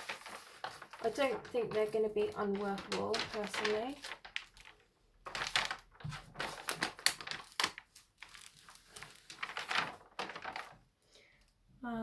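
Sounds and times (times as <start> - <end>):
canvas crinkling and rustling: 0.0 - 10.9.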